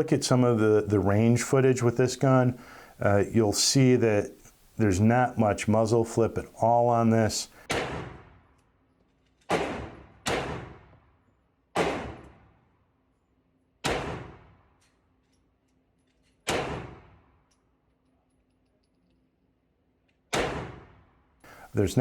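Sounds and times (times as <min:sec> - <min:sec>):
pistol shots echoing: 0:07.7 - 0:08.3, 0:09.5 - 0:10.9, 0:11.8 - 0:12.4, 0:13.8 - 0:14.6, 0:16.5 - 0:17.2, 0:20.3 - 0:21.0.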